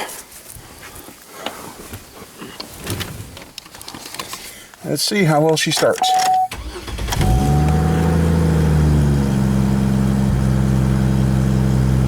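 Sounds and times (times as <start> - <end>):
car engine idling: 6.5 - 12.0.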